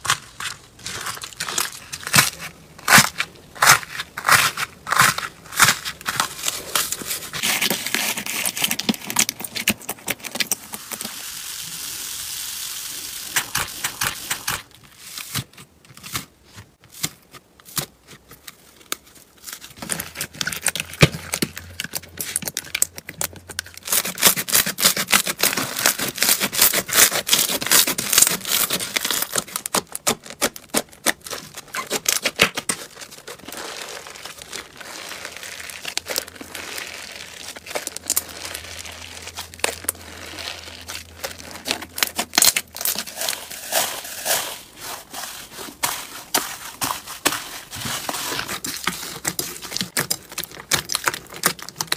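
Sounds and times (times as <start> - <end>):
slime crackling and popping: 0.0 - 11.8, 19.8 - 45.1, 45.7 - 51.9
smooth hiss: 10.9 - 13.6.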